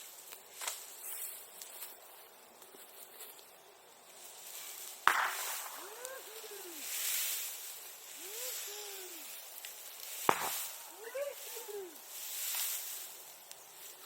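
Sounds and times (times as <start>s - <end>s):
bonfire hissing: 0.0s - 14.0s
loud pop in fire: 5.0s - 6.2s, 10.1s - 11.0s.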